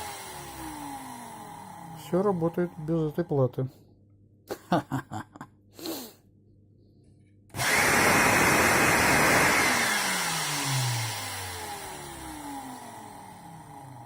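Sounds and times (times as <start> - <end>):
vacuum cleaner motor whining: 0.0 - 3.2, 7.6 - 14.0.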